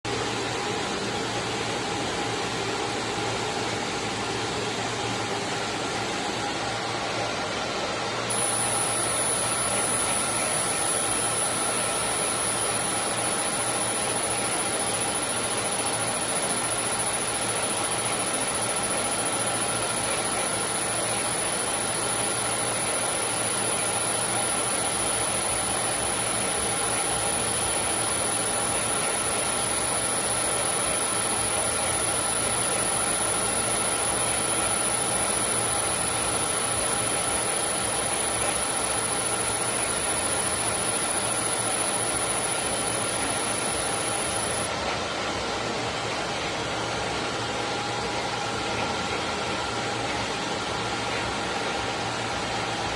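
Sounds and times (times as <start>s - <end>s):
machine fan hiss: 8.1s - 44.7s
high-pitched whine: 8.2s - 44.8s.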